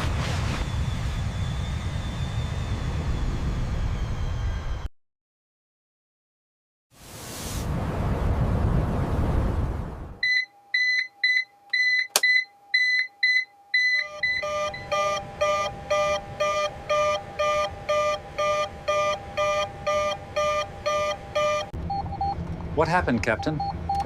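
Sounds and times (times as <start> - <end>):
loud rushing noise: 0.0 - 4.4
high shrill alarm beeps: 10.2 - 22.4
lower fuller-toned alarm beeping: 10.2 - 22.4, 23.4 - 24.0
steady hum: 14.0 - 24.0.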